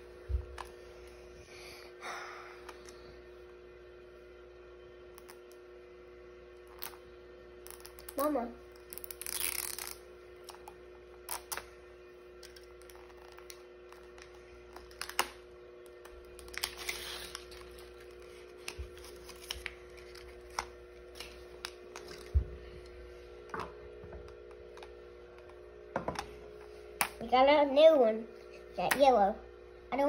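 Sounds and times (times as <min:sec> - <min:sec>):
steady low hum: 0:00.0 - 0:30.0
plastic pack clicks and rustles: 0:12.4 - 0:15.4, 0:16.3 - 0:22.4.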